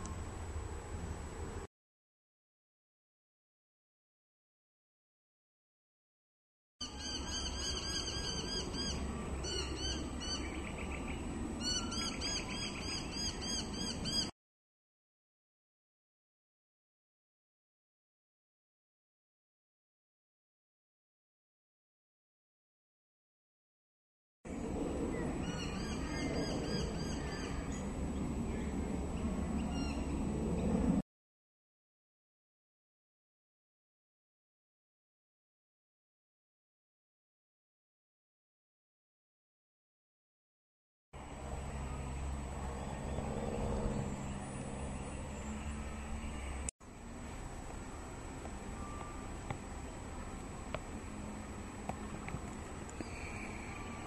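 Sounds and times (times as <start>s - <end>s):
kookaburra calling: 6.8s - 14.3s.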